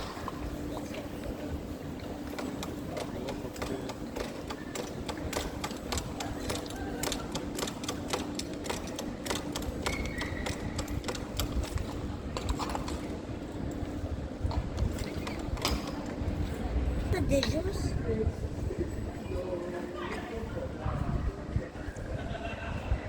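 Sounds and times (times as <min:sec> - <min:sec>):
low street hum and rumble: 0:00.0 - 0:23.0.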